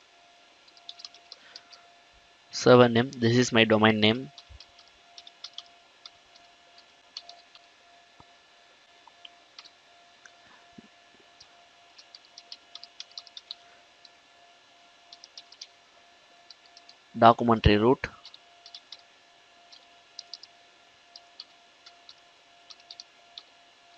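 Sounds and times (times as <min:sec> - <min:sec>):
faint keyboard typing: 0:00.6 - 0:01.8, 0:04.2 - 0:07.7, 0:09.1 - 0:10.4, 0:11.3 - 0:14.2, 0:15.1 - 0:15.8, 0:16.4 - 0:17.0, 0:18.1 - 0:23.9.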